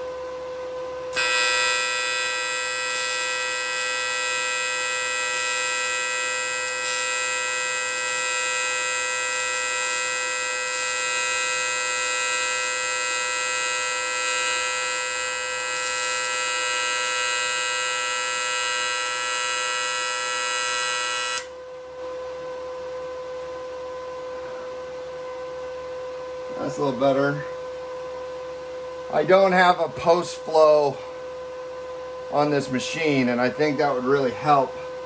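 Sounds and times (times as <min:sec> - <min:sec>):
welder humming: 0:01.1 - 0:21.5, 0:32.3 - 0:34.9
welding arc buzzing: 0:01.1 - 0:21.5.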